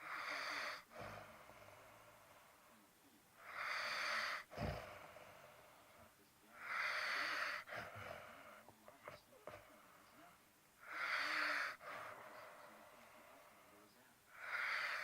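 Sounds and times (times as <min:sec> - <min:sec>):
person snoring: 0:00.0 - 0:02.3, 0:03.4 - 0:06.0, 0:06.6 - 0:08.7, 0:10.9 - 0:15.0
short snort: 0:03.6 - 0:05.0.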